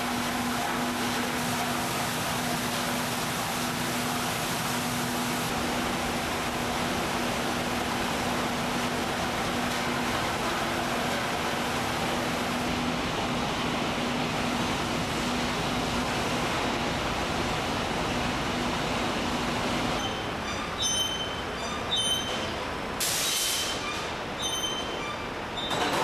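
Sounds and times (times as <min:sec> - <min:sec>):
factory machinery running: 0:00.0 - 0:26.0.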